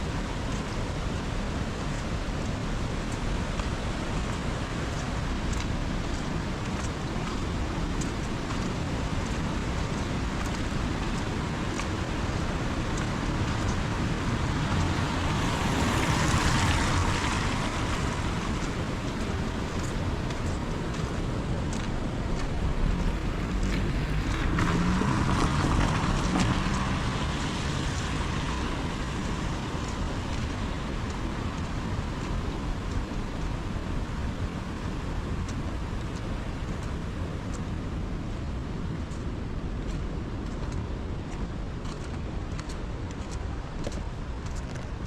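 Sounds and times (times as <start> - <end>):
raindrops ticking: 3.0 - 33.5
heavy rain falling: 3.9 - 36.1.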